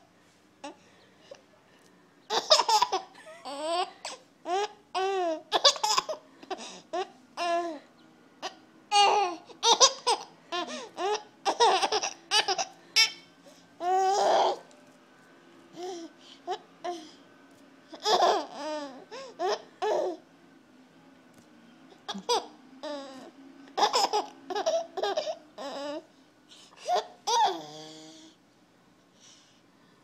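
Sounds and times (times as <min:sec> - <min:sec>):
baby giggling: 0:02.3 - 0:07.8, 0:08.4 - 0:13.2, 0:17.9 - 0:20.2, 0:22.0 - 0:26.0, 0:26.8 - 0:27.9.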